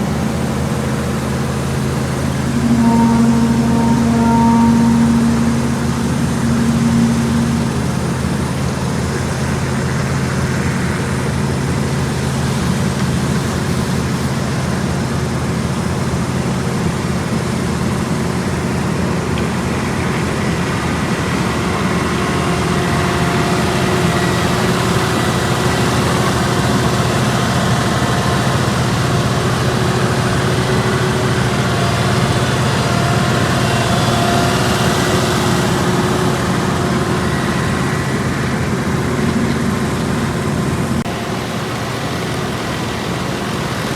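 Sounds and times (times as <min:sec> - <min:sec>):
diesel engines humming: 0:00.0 - 0:14.5
faint high tones: 0:02.2 - 0:09.2.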